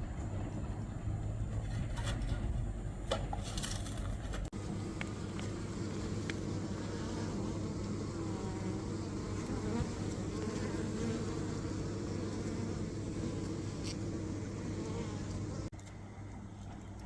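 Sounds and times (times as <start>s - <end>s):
bees buzzing: 4.5s - 15.7s.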